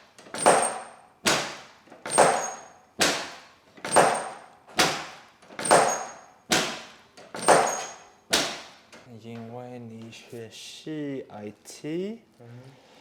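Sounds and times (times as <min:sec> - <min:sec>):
sharp ringing knocks: 0:00.2 - 0:08.8.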